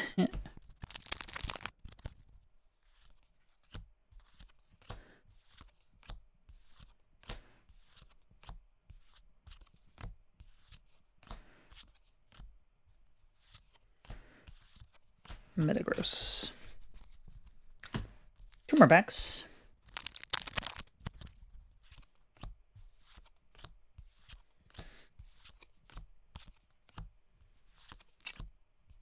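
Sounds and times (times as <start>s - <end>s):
trading cards sliding and flicking: 0.8s - 1.7s, 19.9s - 21.3s, 27.9s - 28.5s.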